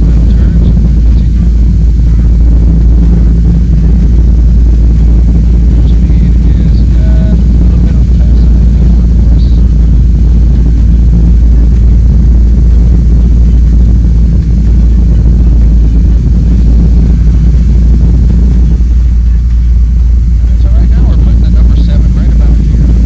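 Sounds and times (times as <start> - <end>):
propeller airplane engine drone: 0.0 - 23.0.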